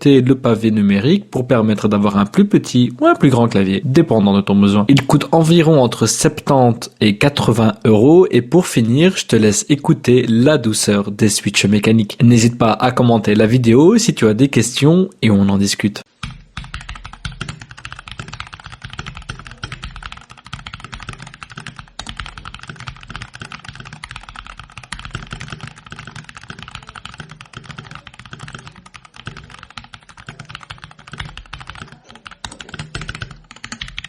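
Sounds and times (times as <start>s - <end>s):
fast mechanical keyboard typing: 16.1s - 34.0s.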